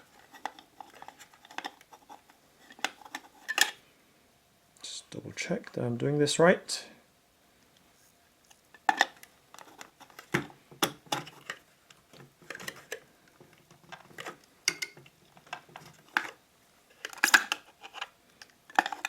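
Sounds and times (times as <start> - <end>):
watch handling clicks and rattles: 13.6 - 19.0.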